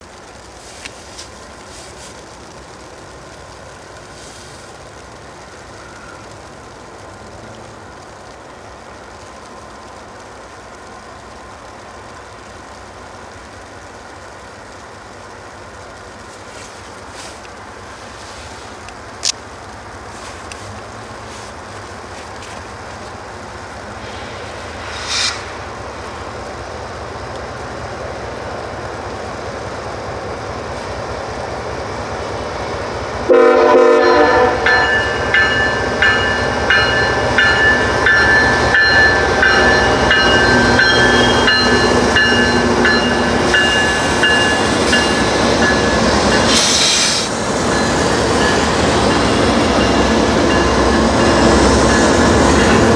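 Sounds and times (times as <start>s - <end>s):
train rumble: 0.0s - 52.9s
train horn blast: 33.3s - 35.2s
high steady ringing tones: 34.0s - 46.7s, 47.3s - 52.9s.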